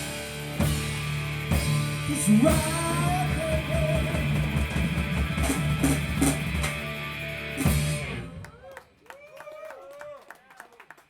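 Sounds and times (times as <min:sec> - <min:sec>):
rock band playing: 0:00.0 - 0:08.6.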